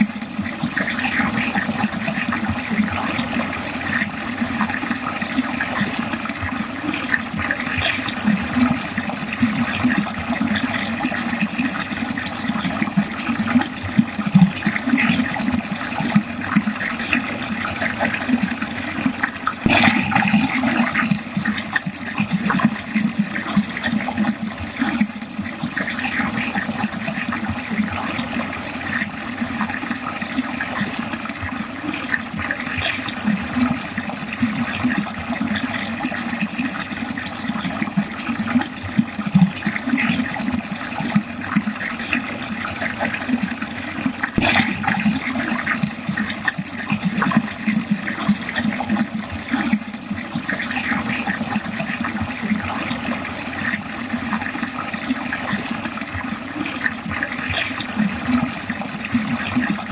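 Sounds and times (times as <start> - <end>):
water gurgling down a drain: 0.0 - 59.9
water splash: 17.8 - 29.5, 42.8 - 49.8.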